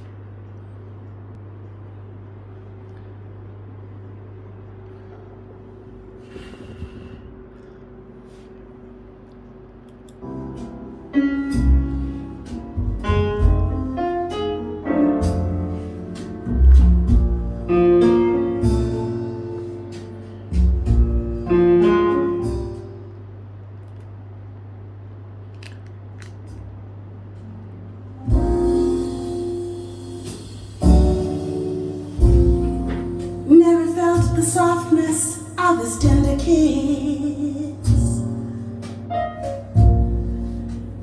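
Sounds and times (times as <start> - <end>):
low steady hum: 0.0 - 41.0
instrumental music with piano and guitar: 10.3 - 23.2, 28.1 - 41.0.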